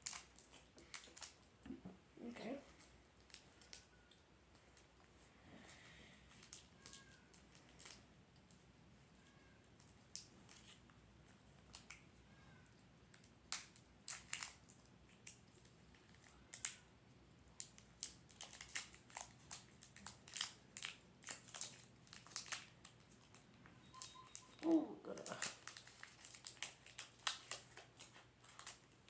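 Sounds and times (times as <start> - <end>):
foil wrapper crinkling: 6.3 - 8.5, 13.1 - 16.9, 17.6 - 29.0.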